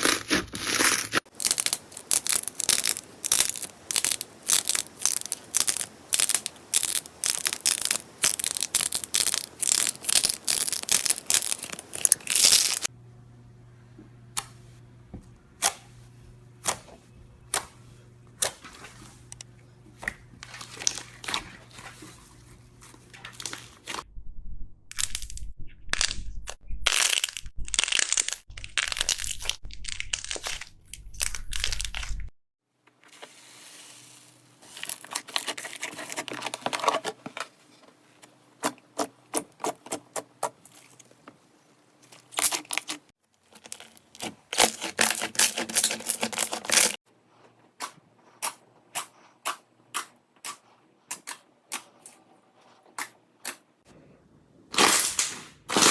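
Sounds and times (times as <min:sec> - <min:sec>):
slime squelching: 0:00.0 - 0:12.9, 0:38.5 - 0:47.0.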